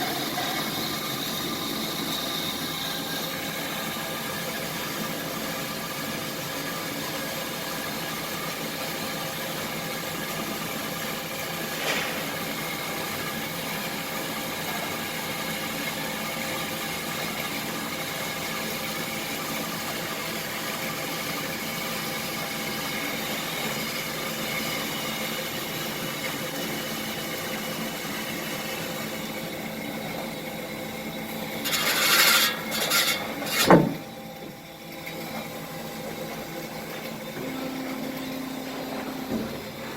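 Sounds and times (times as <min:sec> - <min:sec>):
band saw humming: 0:31.5 - 0:34.2, 0:37.3 - 0:39.9.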